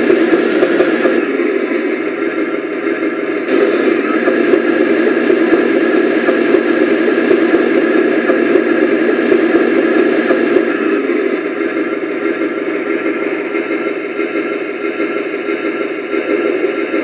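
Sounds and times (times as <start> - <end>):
tank engine rumble through speaker: 0.0 - 17.0.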